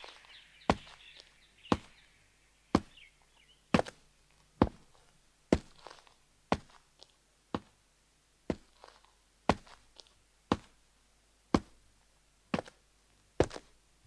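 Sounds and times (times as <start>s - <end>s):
sharp footsteps: 0.0s - 2.1s, 2.7s - 4.0s.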